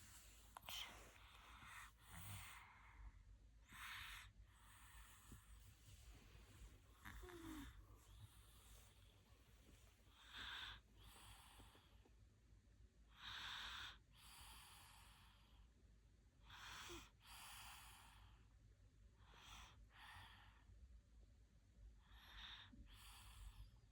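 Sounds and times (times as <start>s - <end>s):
toddler snoring softly: 0.0s - 3.0s, 3.6s - 9.3s, 10.1s - 12.1s, 13.1s - 15.7s, 16.4s - 18.5s, 22.0s - 23.9s.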